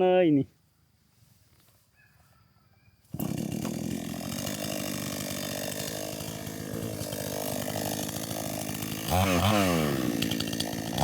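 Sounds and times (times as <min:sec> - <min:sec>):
chainsaw cutting wood: 0:03.1 - 0:11.0.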